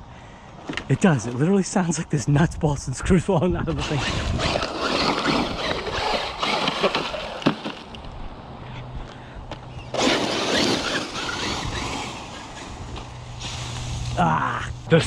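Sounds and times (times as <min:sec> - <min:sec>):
rc truck driving over dirt: 0:03.6 - 0:15.0.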